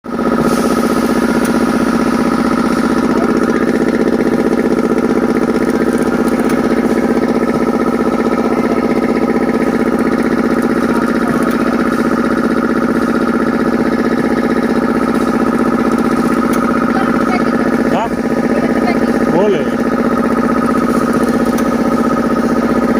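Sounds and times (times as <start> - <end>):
packaging machine humming: 0.1 - 22.9.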